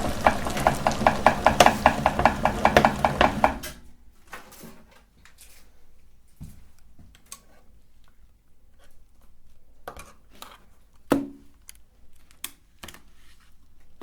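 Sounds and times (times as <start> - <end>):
hard candy knocking on metal: 0.0 - 3.8
loud clunk: 0.0 - 3.9.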